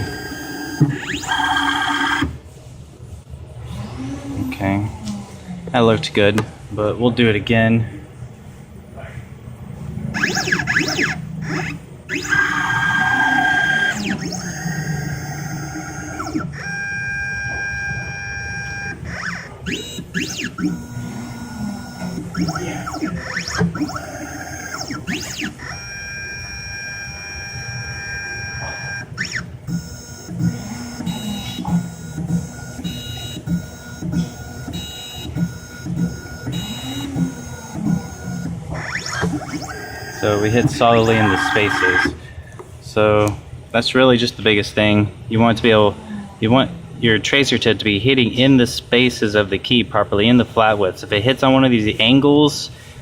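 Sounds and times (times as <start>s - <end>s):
stepper motors whining: 0.0s - 2.4s, 10.1s - 42.2s
short regular motor pulses: 10.1s - 42.2s.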